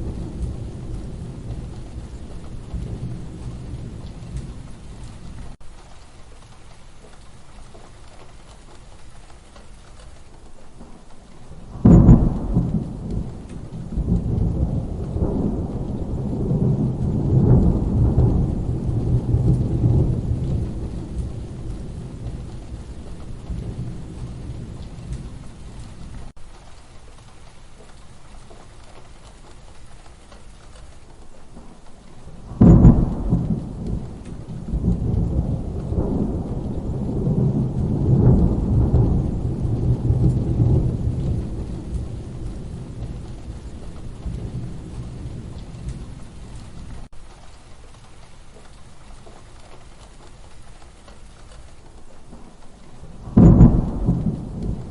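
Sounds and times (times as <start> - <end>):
thunder cracks and rumble: 0.0 - 5.6, 10.8 - 26.4, 31.5 - 47.1, 52.2 - 54.9
steady rain: 0.0 - 54.9.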